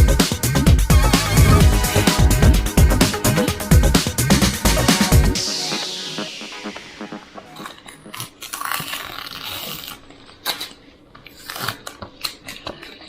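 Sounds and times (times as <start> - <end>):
music: 0.0 - 8.3.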